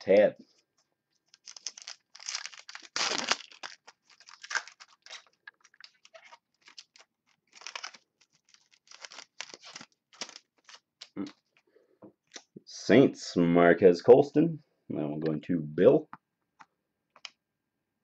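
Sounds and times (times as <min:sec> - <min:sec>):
cards and wrapper rustling: 0:01.1 - 0:11.7.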